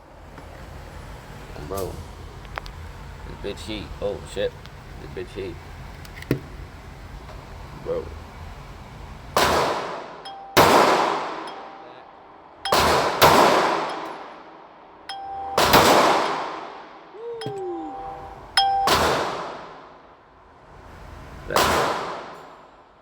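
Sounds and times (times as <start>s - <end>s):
pistol shots with echo: 9.4s - 10.0s, 10.6s - 11.8s, 12.7s - 14.1s, 15.6s - 16.7s, 21.6s - 22.3s
thin metallic pings: 10.2s - 19.4s.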